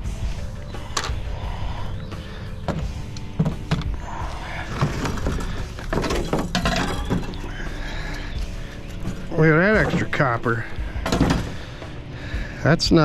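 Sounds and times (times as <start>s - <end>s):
metal parts clanking and scraping: 0.9s - 1.2s, 2.7s - 12.0s.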